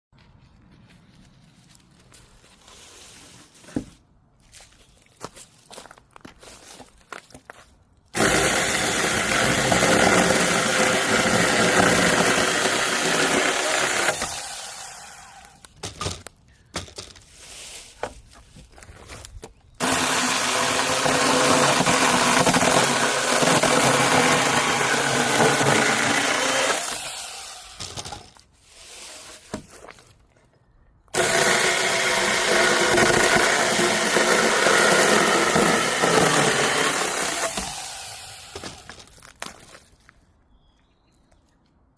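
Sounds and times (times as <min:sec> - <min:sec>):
chainsaw cutting wood: 0:08.2 - 0:16.2, 0:19.8 - 0:28.4, 0:31.1 - 0:39.1.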